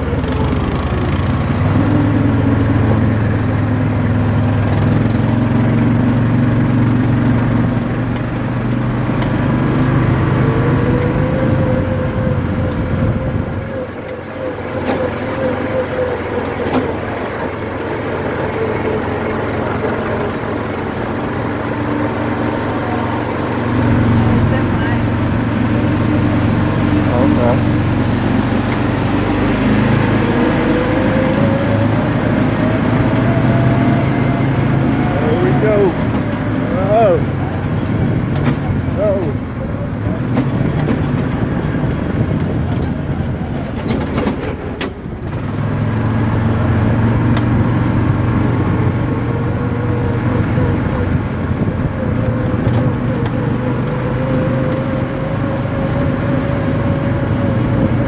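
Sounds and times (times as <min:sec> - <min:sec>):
steady whining tone: 0:00.0 - 0:44.1
atv engine running: 0:00.0 - 0:58.0.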